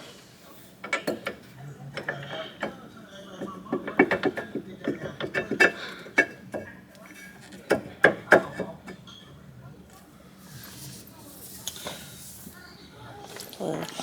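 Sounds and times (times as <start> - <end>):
metallic clicks and clanks: 0.8 - 2.8.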